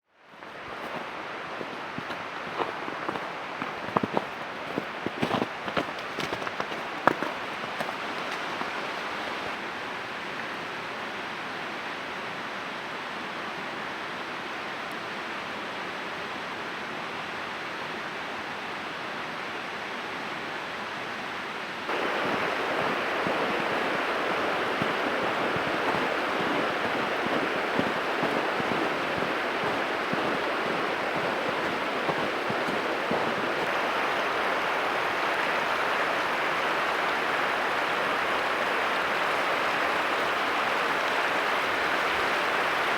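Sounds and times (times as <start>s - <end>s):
flowing water rushing: 0.2s - 9.7s, 21.9s - 42.9s.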